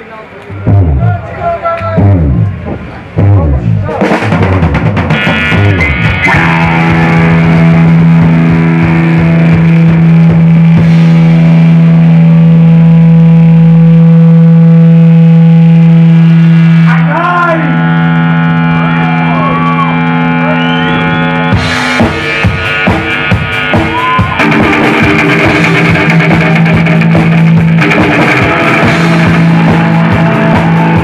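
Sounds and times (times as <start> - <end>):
electric guitar chords: 0.4 - 31.0.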